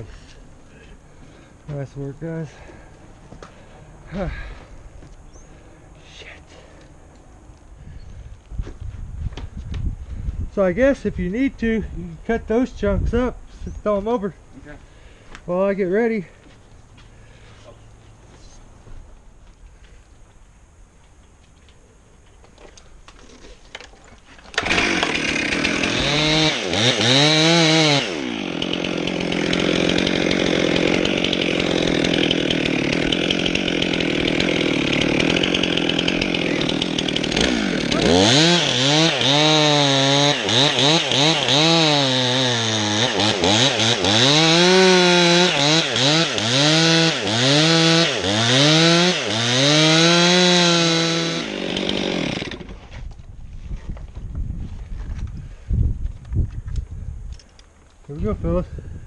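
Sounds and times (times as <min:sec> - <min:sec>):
chainsaw revving: 0:24.5 - 0:52.9.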